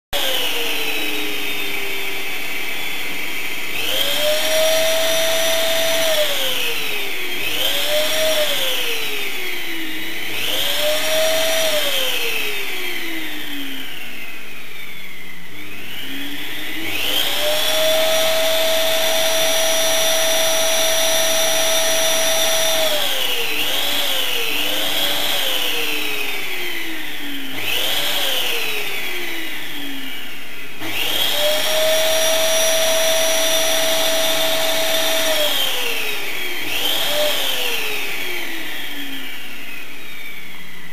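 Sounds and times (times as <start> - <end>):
vacuum cleaner motor whine: 0.1 - 40.9.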